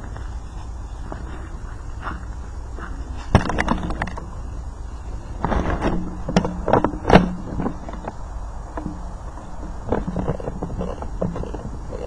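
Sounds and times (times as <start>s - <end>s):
sharp clicks and knocks: 3.3s - 4.3s, 5.4s - 12.0s.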